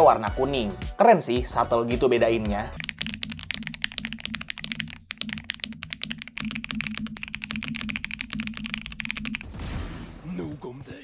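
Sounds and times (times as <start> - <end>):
rapid keyboard typing: 1.9 - 9.6.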